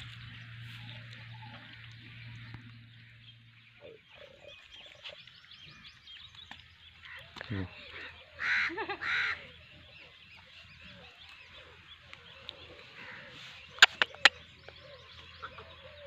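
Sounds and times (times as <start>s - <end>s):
crow cawing: 8.4s - 9.4s.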